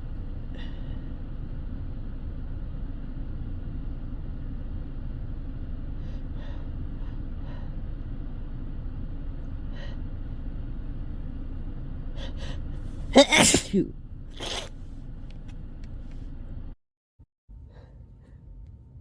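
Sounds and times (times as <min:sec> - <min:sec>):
short sharp inhalations: 0:13.2 - 0:13.8, 0:14.4 - 0:14.7.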